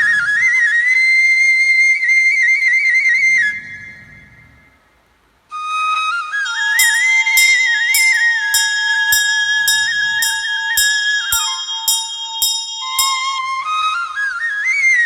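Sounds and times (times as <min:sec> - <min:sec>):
light percussive beat: 0:06.8 - 0:13.4
steady held note: 0:06.8 - 0:13.6.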